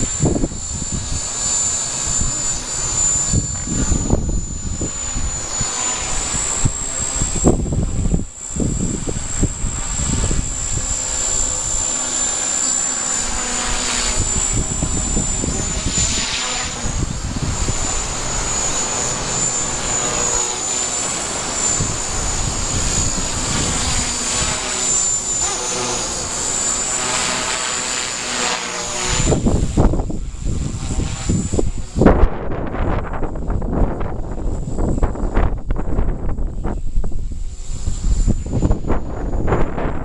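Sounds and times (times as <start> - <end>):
strong wind whistling: 0.0 - 27.1, 29.0 - 40.0
wind buffeting microphone: 0.0 - 27.6, 28.4 - 40.0.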